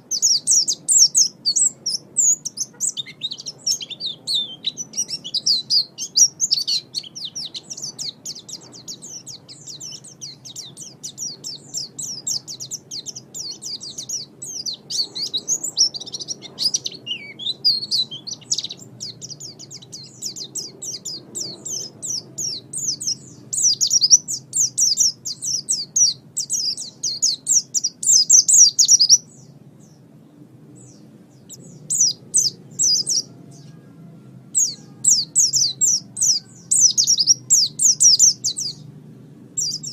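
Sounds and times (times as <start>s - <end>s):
songbird twittering: 0.0s - 38.9s, 39.5s - 39.9s.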